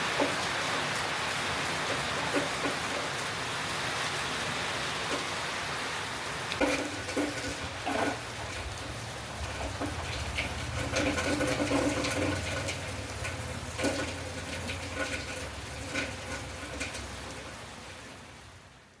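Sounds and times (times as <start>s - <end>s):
rain falling: 0.0s - 19.0s
drips tapping: 6.5s - 17.4s.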